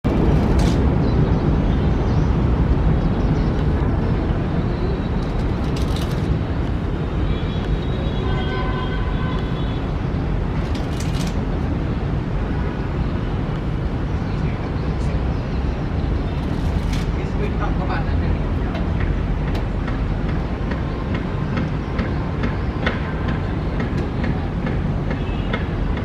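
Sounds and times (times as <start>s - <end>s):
low rumble of vehicle noise: 0.0s - 26.0s.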